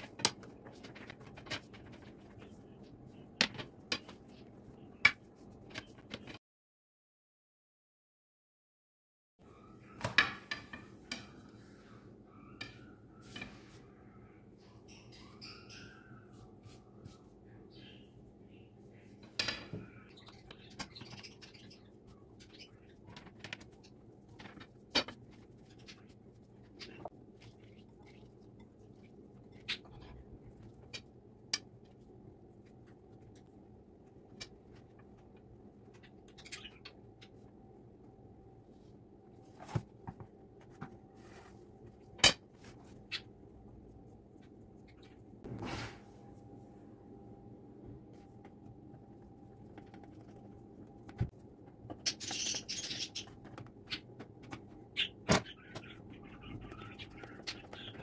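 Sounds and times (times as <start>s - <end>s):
faint steady hum: 9.4s - 55.0s.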